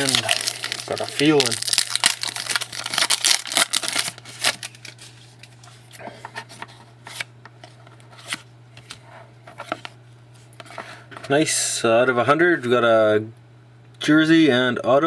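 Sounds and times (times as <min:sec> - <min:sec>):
cards rustling and clicking: 0:00.0 - 0:10.0.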